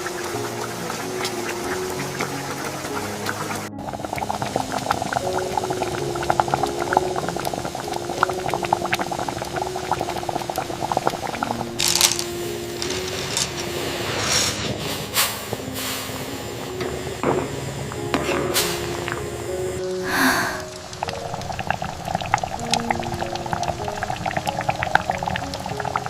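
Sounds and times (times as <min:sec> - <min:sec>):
liquid bubbling in a pot: 0:00.0 - 0:15.7, 0:20.6 - 0:26.0
soft music with held notes: 0:00.0 - 0:26.0
loud hiss: 0:11.8 - 0:22.0.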